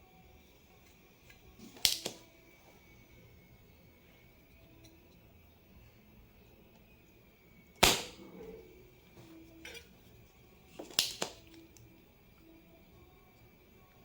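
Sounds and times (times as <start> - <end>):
desoldering pump snapping: 1.3 - 2.3, 7.8 - 8.6, 9.6 - 10.0, 10.7 - 12.0.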